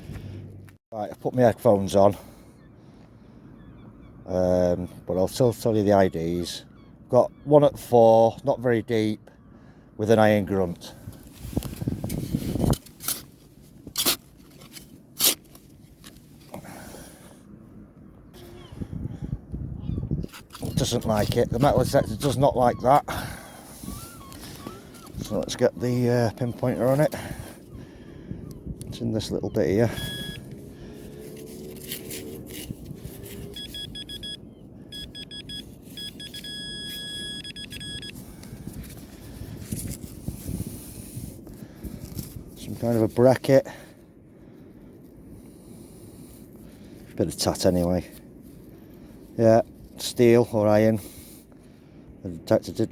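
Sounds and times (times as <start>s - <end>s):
spade digging into sand: 13.9s - 15.5s
wind and surf noise: 16.1s - 42.9s
metal detector pinpointer beeping: 29.9s - 30.5s, 33.4s - 38.3s.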